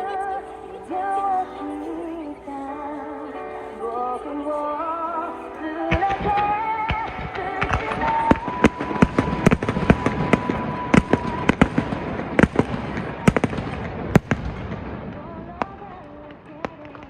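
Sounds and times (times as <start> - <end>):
fireworks bursting: 5.8 - 17.0.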